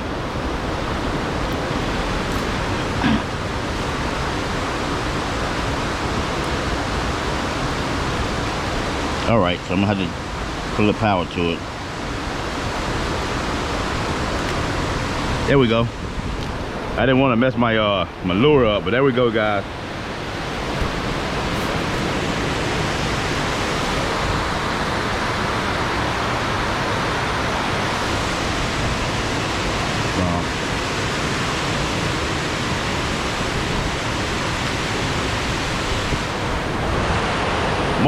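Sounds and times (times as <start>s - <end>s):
fast-flowing water rushing: 0.0s - 38.0s.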